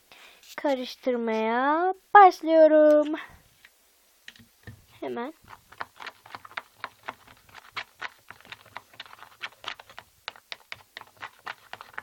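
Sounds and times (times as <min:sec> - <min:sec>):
slime stirred in a bowl: 0:04.7 - 0:12.0.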